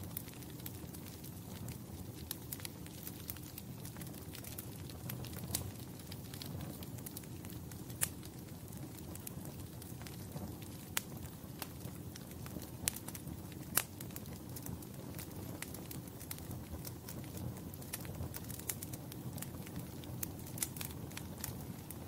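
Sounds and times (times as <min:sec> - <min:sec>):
wood fire crackling and popping: 0:00.0 - 0:22.0.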